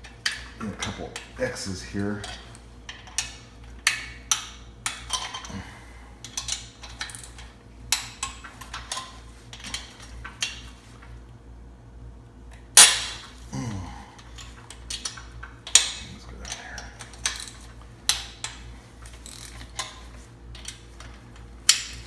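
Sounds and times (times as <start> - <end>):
metal tools clicking and clinking: 2.0 - 5.6, 6.2 - 10.6, 14.2 - 22.0
sharp metallic crack: 12.8 - 13.3.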